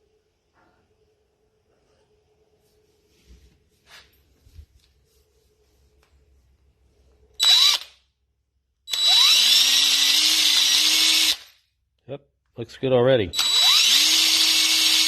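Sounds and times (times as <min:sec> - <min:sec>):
electric drill whine: 0:07.4 - 0:07.9, 0:08.9 - 0:11.5, 0:13.4 - 0:15.0.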